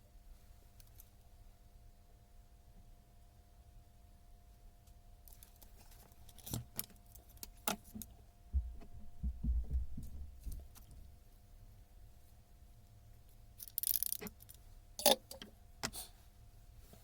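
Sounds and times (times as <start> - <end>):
low thuds: 8.5 - 11.1
metallic clicks and clinks: 13.6 - 15.5.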